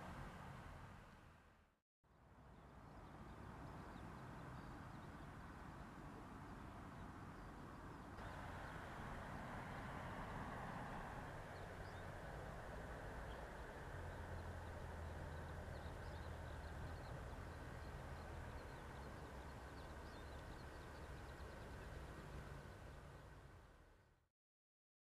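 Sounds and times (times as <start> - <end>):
background wash: 0.0 - 1.6, 8.2 - 24.1.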